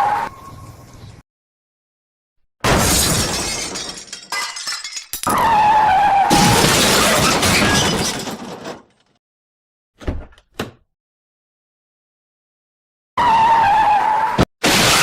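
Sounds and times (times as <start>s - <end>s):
glass shattering: 2.7s - 5.4s, 6.3s - 9.1s
car crash: 2.7s - 9.1s.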